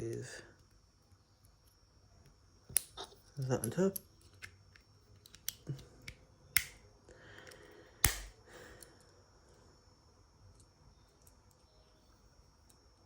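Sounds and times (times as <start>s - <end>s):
plastic bricks clicking together: 7.4s - 8.3s.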